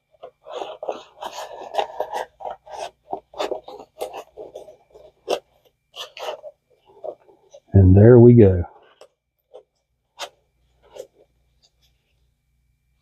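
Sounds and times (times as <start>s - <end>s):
cardboard and paper handled: 0.0s - 7.7s, 8.7s - 12.3s.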